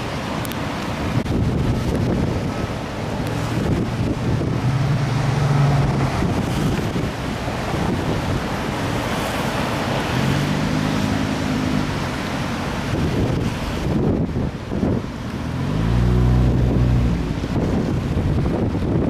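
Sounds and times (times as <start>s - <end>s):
river rushing with ice: 0.0s - 19.0s
wind buffeting microphone: 0.0s - 19.0s
low hum: 3.7s - 6.9s.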